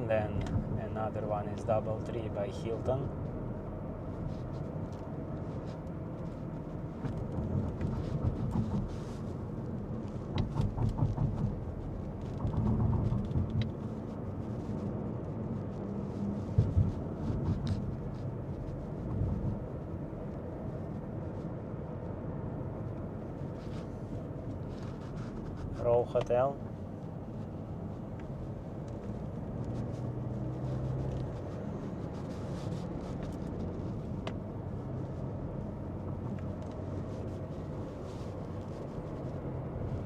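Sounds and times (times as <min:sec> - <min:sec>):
car road and engine rumble: 0:00.0 - 0:40.0.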